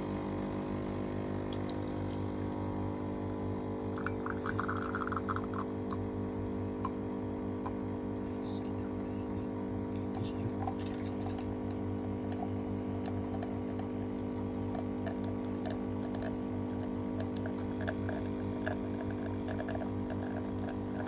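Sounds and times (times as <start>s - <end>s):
espresso machine pump humming: 0.0s - 21.0s
faint irregular ticks: 11.6s - 21.0s.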